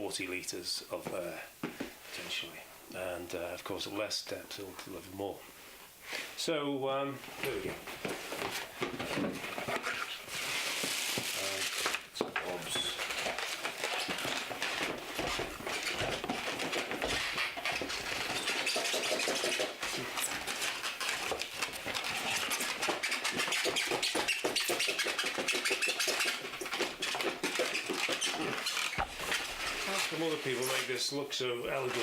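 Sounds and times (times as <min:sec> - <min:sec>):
packaging rustling and crinkling: 0:07.2 - 0:32.0.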